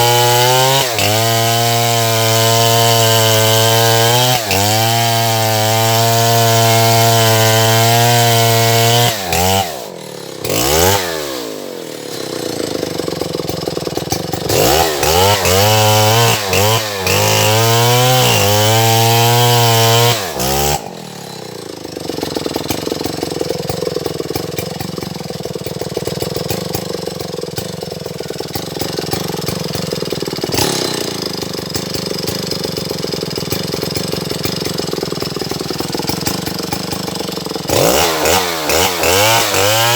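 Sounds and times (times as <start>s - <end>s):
chainsaw cutting into tree: 0.0s - 39.9s.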